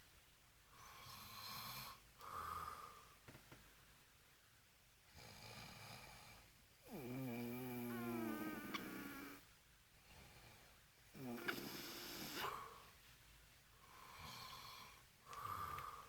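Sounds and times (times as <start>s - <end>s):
man snoring heavily: 6.9s - 9.4s, 11.2s - 12.7s.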